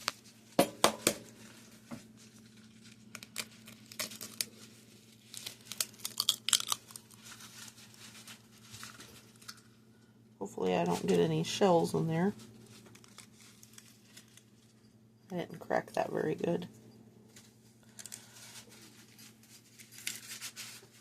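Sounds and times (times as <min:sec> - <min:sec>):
eggshell crackling: 0:02.7 - 0:09.8.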